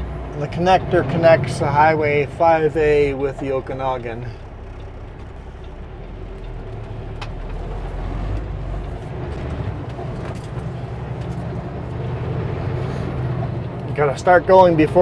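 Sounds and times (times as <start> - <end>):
diesel truck engine droning: 0.0 - 15.0.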